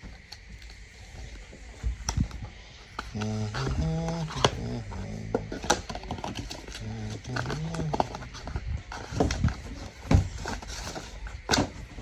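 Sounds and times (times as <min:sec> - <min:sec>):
hard objects knocking and clicking: 0:03.0 - 0:12.0.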